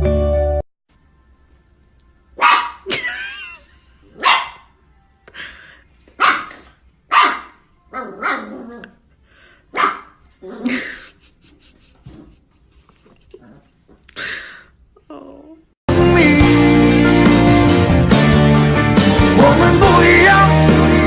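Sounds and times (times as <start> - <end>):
dog barking: 2.4 - 2.9, 4.2 - 4.8, 6.2 - 8.6, 9.7 - 10.2.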